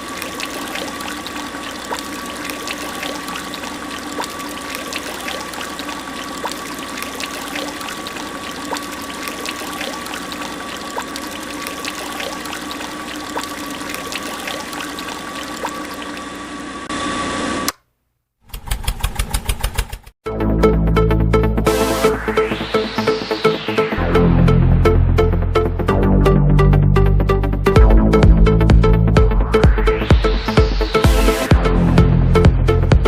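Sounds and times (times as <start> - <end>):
water trickling and pouring: 0.0 - 16.6
pulsing electronic beat: 20.3 - 33.0.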